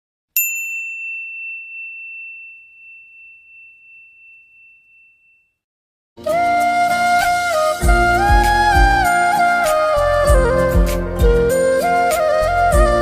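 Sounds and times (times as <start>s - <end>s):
high bell chime: 0.4s - 5.6s.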